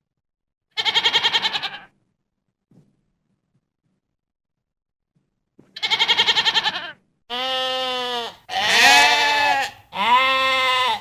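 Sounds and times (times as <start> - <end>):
goat bleating: 0.8 - 1.9, 5.8 - 11.0.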